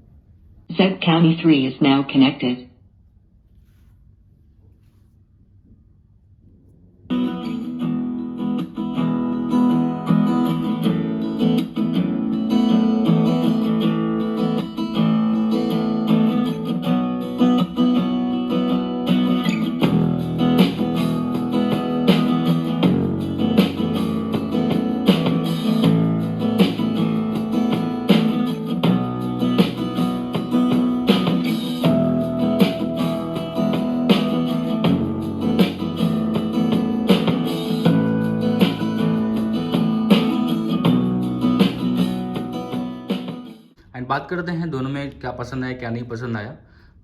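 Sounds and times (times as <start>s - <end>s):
guitar song through speaker: 7.1s - 43.7s
deep bass line: 19.8s - 43.0s.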